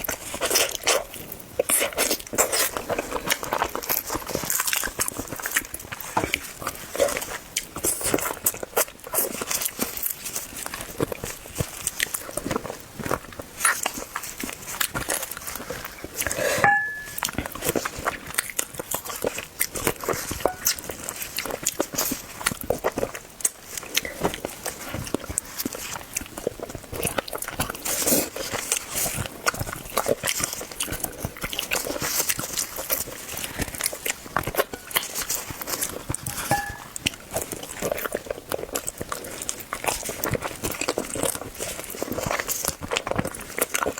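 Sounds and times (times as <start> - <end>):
person chewing crunchy food: 0.0 - 43.9.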